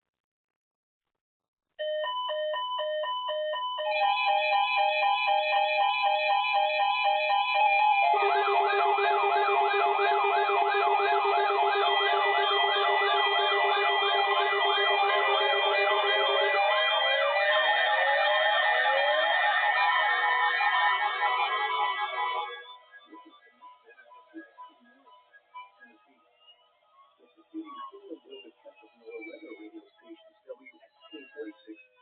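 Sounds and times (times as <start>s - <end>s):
pulsing multi-tone alarm beeping: 3.6s - 22.7s
steady alarm tones: 3.9s - 22.7s
fast sweeping siren: 4.8s - 22.6s.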